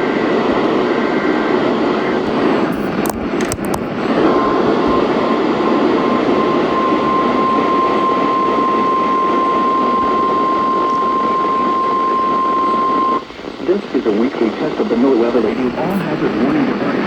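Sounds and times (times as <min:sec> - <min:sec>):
radio static: 0:00.1 - 0:17.0
steady high alarm tone: 0:04.2 - 0:13.8.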